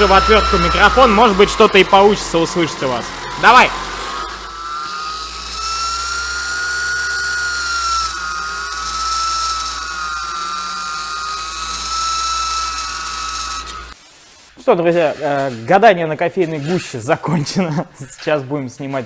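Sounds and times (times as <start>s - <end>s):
water pump high whine: 0.0s - 14.0s.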